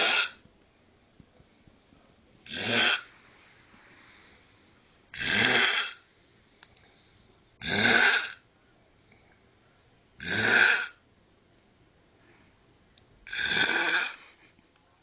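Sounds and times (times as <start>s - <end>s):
loud snoring: 0.0s - 0.4s, 2.5s - 3.4s, 5.1s - 6.0s, 7.6s - 8.4s, 10.2s - 11.0s, 13.3s - 14.2s.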